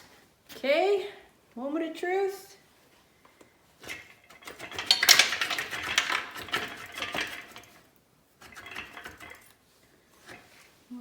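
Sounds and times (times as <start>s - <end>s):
metal parts clinking and clattering: 3.8s - 7.8s.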